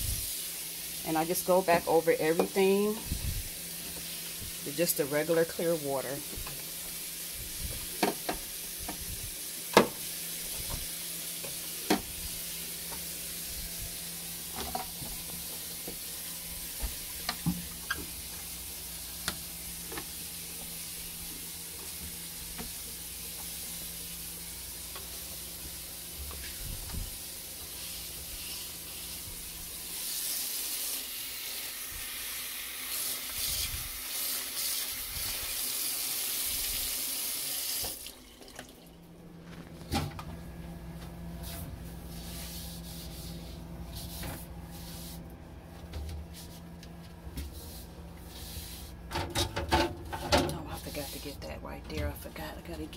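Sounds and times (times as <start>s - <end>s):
cloth rubbing and wiping: 41.4s - 45.3s, 46.3s - 46.8s, 47.4s - 49.0s.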